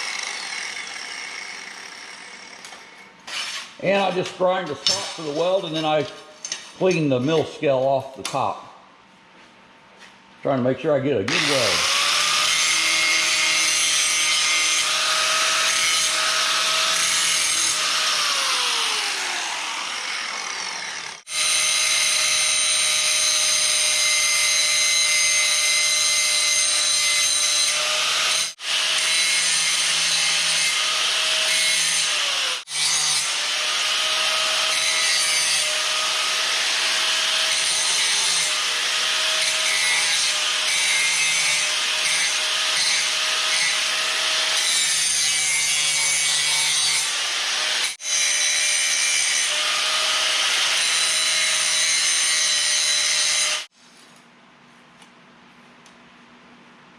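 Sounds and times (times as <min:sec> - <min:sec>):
angle grinder grinding steel: 0:00.0 - 0:07.4, 0:11.3 - 0:53.7.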